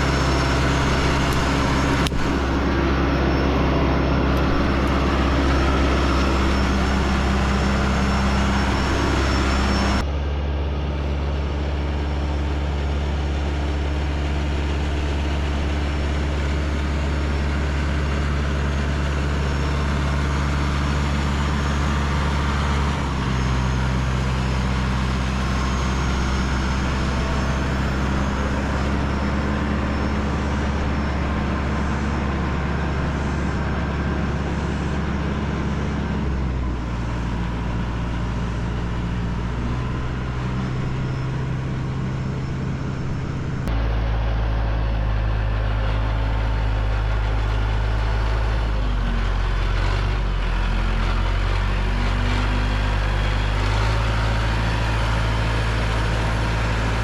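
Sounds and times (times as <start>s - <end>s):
tractor engine running: 0.0s - 57.0s.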